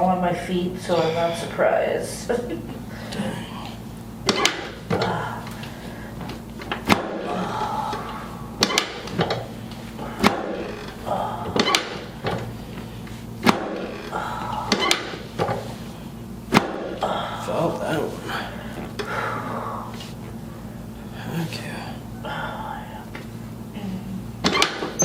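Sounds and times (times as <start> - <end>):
spine clicks and knocks: 4.2 - 7.2, 8.6 - 12.6.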